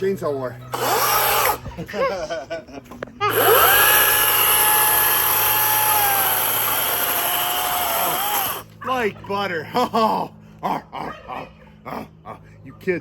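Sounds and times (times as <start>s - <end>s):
electric chainsaw cutting wood: 0.7s - 1.8s, 3.2s - 8.8s.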